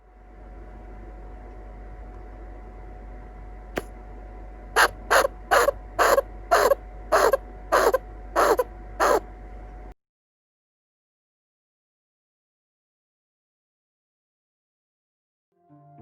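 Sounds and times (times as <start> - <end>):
chinchilla alarm barks: 4.8 - 9.2.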